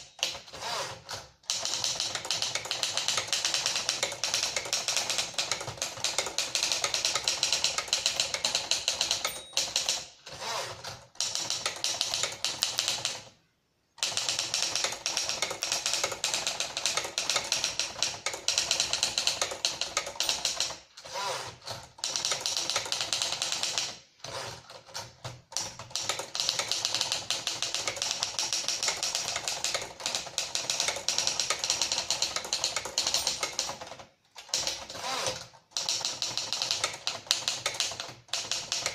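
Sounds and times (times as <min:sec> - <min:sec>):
typewriter keys clacking: 0:00.1 - 0:10.1, 0:10.7 - 0:13.3, 0:14.0 - 0:38.9.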